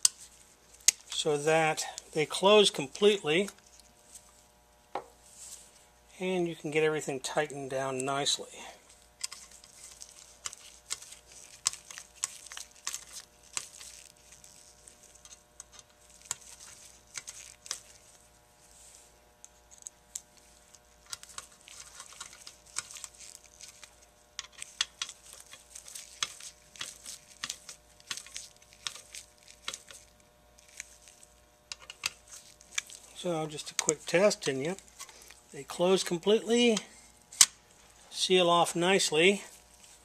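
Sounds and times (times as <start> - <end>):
faint steady hum: 0.0 - 40.0
screwdriver clicks and scrapes: 9.2 - 18.1, 21.0 - 30.0, 31.7 - 33.0.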